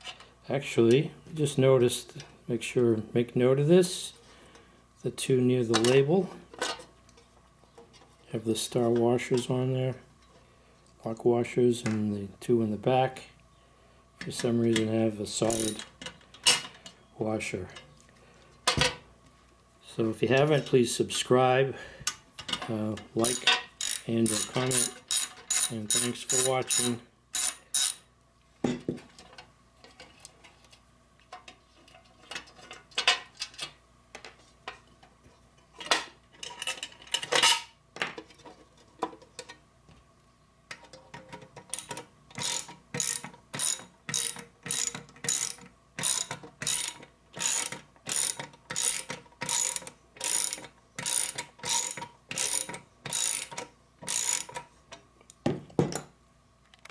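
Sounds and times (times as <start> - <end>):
socket ratchet clicking: 15.5 - 15.9, 23.2 - 28.0, 41.7 - 54.6.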